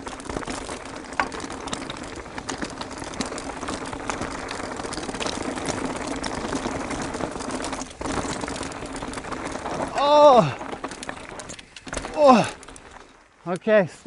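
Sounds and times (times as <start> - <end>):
bike tyres crunching over stones: 0.0 - 14.0
gravel and bike parts rattling: 0.0 - 14.0.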